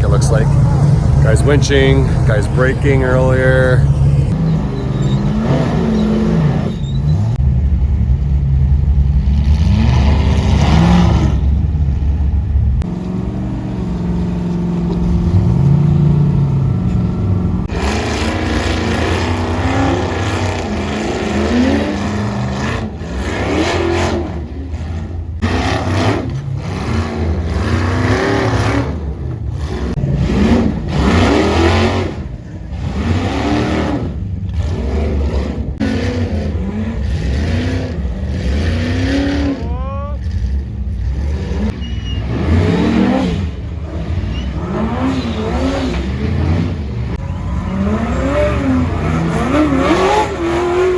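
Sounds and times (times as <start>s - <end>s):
low engine drone: 0.0s - 9.9s
buggy engines revving: 0.0s - 50.9s.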